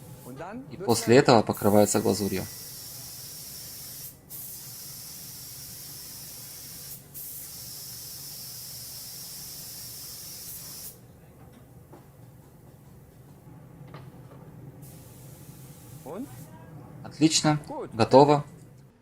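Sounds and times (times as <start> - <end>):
spray gun hissing: 0.9 - 11.0, 14.8 - 16.5.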